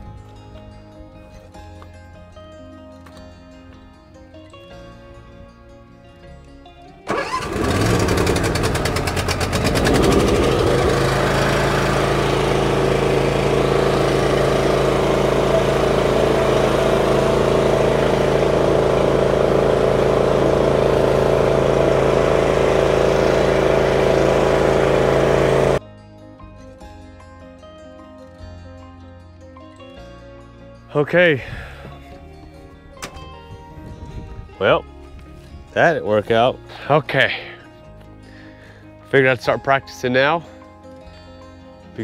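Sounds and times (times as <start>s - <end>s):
lawn mower engine starting: 7.0s - 25.8s, 32.9s - 33.6s.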